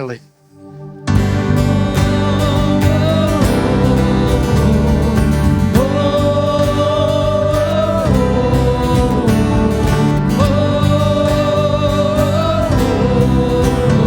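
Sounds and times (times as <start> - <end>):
worship band playing: 0.0 - 14.0
person singing: 0.5 - 14.0.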